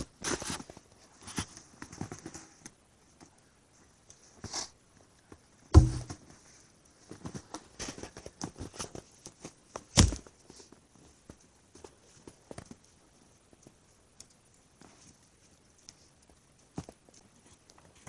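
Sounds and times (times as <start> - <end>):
small scuffs and knocks: 5.3 - 6.5
heavy thumps: 5.7 - 6.4
footsteps: 5.8 - 6.4.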